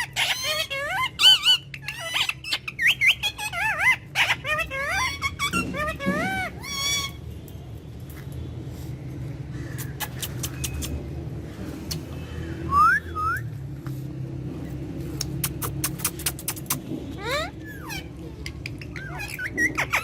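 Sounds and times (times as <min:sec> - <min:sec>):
parrot whistled calls: 0:00.0 - 0:07.2, 0:18.7 - 0:20.0
sharp clicks: 0:15.2 - 0:16.8.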